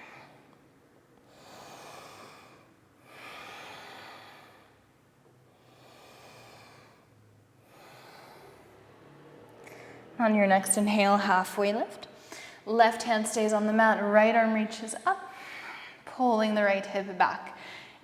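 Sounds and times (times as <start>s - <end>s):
woman breathing slowly: 0.0s - 10.2s, 12.2s - 12.7s, 15.2s - 16.1s, 17.5s - 18.0s.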